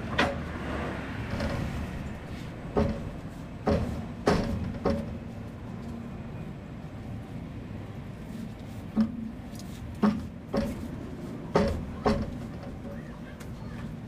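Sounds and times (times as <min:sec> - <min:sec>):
steady background rumble: 0:00.0 - 0:14.0
sharp knocks: 0:02.7 - 0:05.3, 0:10.0 - 0:13.1.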